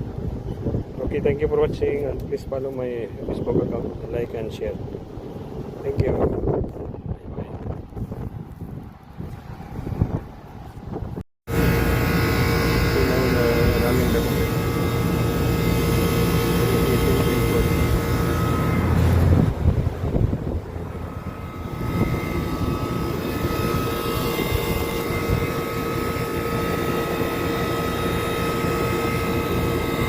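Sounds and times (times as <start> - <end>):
air conditioner humming: 11.5 - 30.0
steady tones: 11.5 - 30.0
whooshing noise: 17.5 - 25.6.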